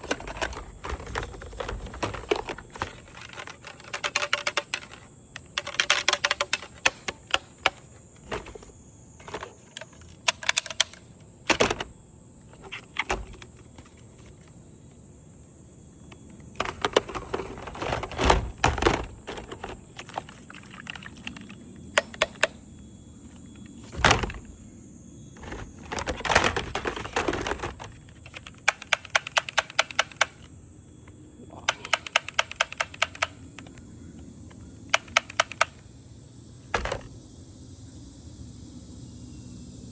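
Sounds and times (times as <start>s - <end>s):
toy blaster clicking and snapping: 0.0s - 8.7s, 9.3s - 11.9s, 16.6s - 22.6s, 25.4s - 30.5s, 31.7s - 33.8s, 34.9s - 35.8s.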